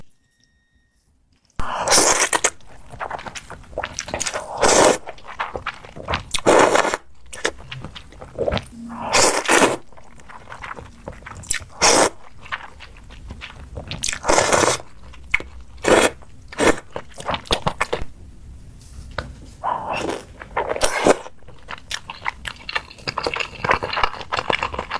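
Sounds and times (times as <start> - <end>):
quiet crackles and scrapes: 18.7 - 20.8.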